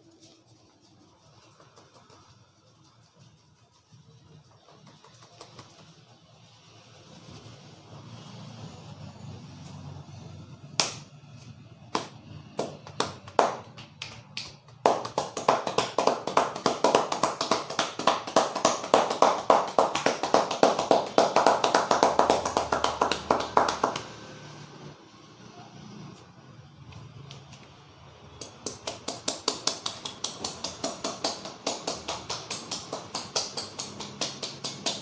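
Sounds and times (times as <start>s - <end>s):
hands slapping skin: 10.8s - 11.1s, 11.9s - 24.0s, 28.4s - 35.0s
rapid hand strikes: 11.9s - 24.0s, 28.4s - 35.0s.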